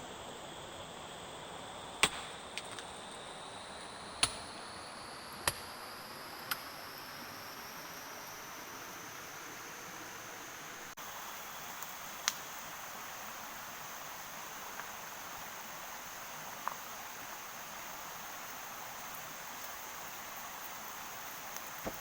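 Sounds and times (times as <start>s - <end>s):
rain hissing: 0.0s - 22.0s
sharp pops or ticks: 2.0s - 2.9s, 4.2s - 4.4s.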